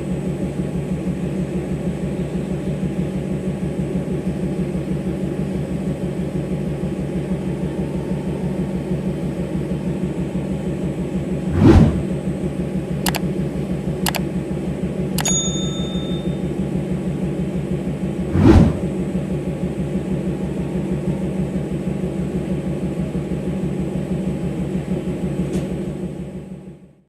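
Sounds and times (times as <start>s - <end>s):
diesel locomotive engine droning: 0.0s - 27.0s
sharp clicks: 13.1s - 13.3s, 14.1s - 14.3s, 15.2s - 16.3s.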